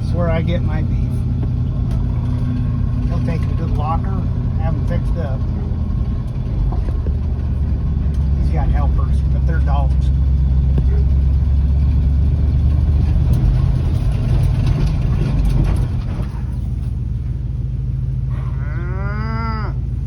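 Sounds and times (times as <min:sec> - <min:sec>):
truck engine rumbling: 0:00.0 - 0:20.0
cow mooing: 0:18.3 - 0:19.8.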